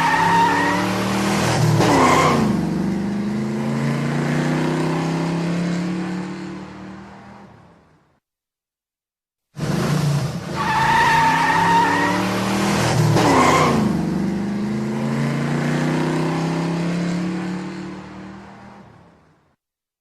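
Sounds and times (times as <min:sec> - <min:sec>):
car accelerating: 0:00.0 - 0:07.5, 0:09.6 - 0:18.8
tyres squealing: 0:10.6 - 0:12.2.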